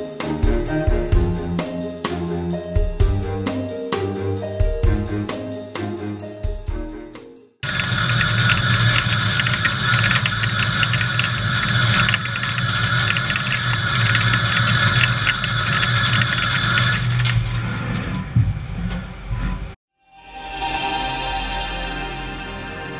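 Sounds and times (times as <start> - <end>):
lathe humming: 7.6 - 17.9.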